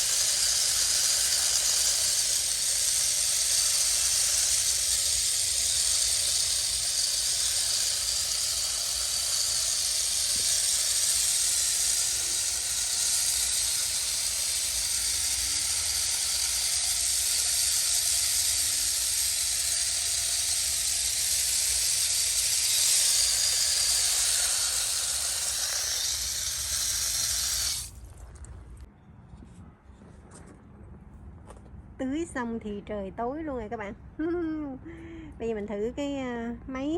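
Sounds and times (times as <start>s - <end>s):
water spraying from hose: 0.0s - 28.2s.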